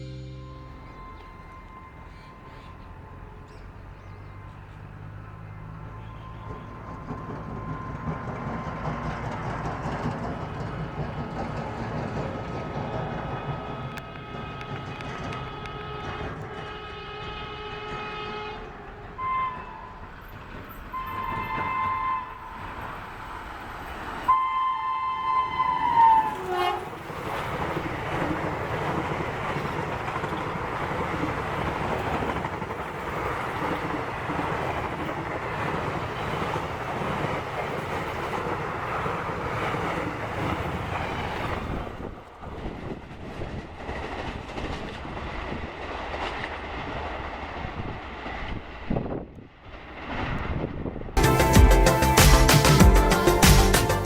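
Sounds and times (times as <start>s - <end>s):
train horn blasts: 0.0s - 3.9s, 5.8s - 9.0s, 12.8s - 20.1s, 20.9s - 22.6s, 24.3s - 27.1s
train wheels on rails: 0.8s - 54.0s.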